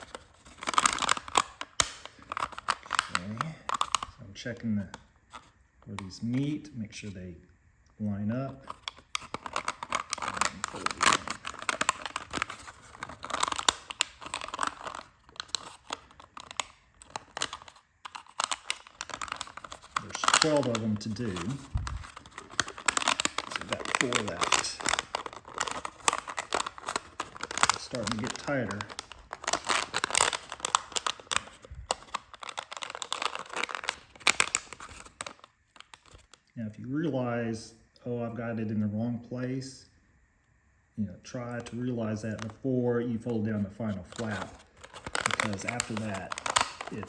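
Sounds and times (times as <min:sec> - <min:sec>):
plastic strips clicking: 0:00.0 - 0:04.2, 0:08.6 - 0:36.5, 0:44.1 - 0:47.0
plastic crinkling: 0:00.0 - 0:06.6, 0:08.5 - 0:36.5, 0:41.4 - 0:42.6, 0:43.2 - 0:47.0.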